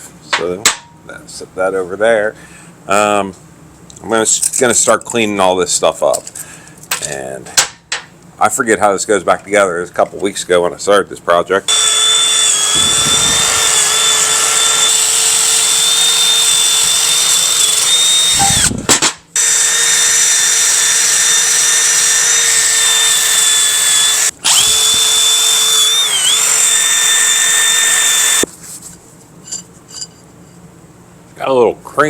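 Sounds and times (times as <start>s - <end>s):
handheld power tool running: 11.7s - 28.5s.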